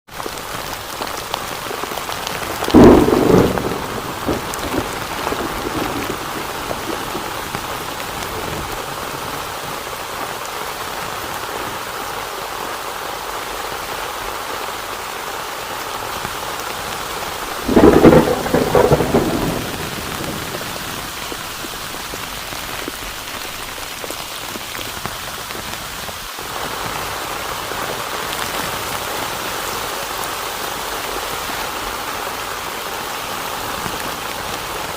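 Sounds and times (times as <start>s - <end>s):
heavy rain falling: 0.1s - 34.9s
thunder claps: 2.5s - 9.1s, 17.2s - 22.4s.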